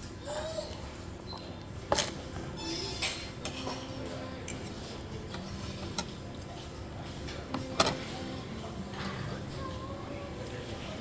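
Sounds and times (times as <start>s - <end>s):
faint background chatter: 0.0s - 11.0s
utensils and dishes clinking: 1.4s - 9.6s.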